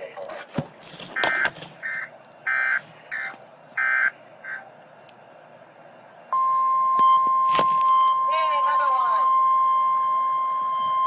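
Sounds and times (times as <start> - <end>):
steady warning alarm tone: 1.0 - 4.7, 6.3 - 11.0.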